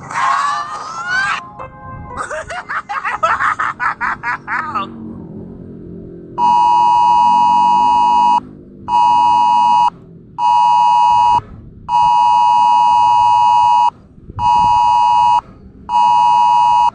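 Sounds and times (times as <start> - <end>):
electronic two-tone alert signal: 6.4 - 16.9.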